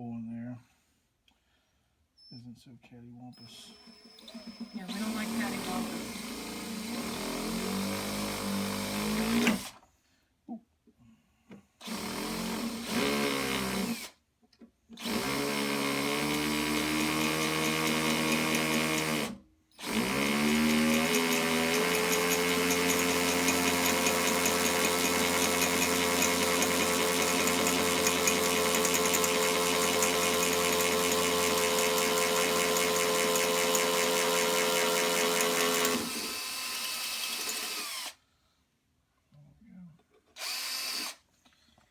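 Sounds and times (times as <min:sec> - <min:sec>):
electric drill drilling: 0:04.2 - 0:09.8, 0:11.8 - 0:14.1, 0:15.0 - 0:38.2, 0:40.4 - 0:41.2.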